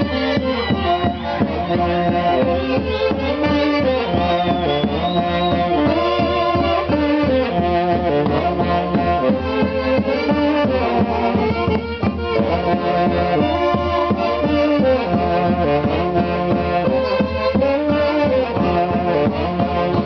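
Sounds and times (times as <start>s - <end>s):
brass band music: 0.0s - 20.0s.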